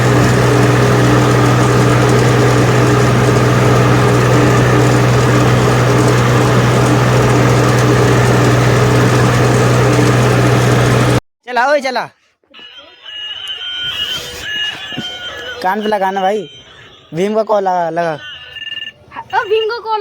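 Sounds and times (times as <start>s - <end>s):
tractor diesel engine running: 0.0s - 11.2s.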